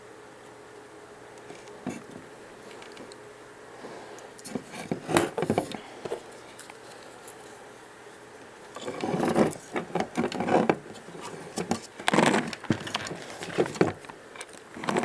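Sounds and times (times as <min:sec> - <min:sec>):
faint steady hum: 0:00.0 - 0:15.0
clattering and scraping: 0:08.8 - 0:14.1.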